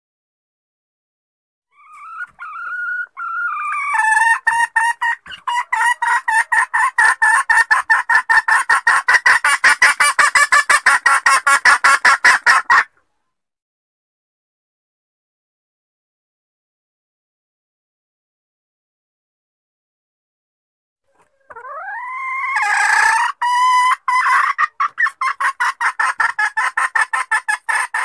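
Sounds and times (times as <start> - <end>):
hen fast clucking: 1.7 - 13.0, 21.1 - 28.0.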